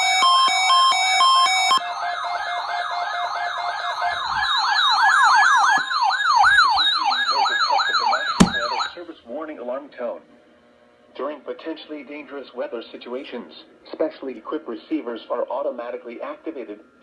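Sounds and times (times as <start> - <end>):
sharp click: 8.4 - 8.7.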